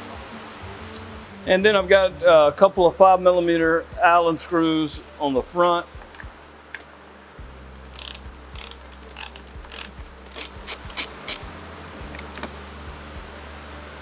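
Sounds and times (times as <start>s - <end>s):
hand ratchet clicking: 7.8s - 11.6s.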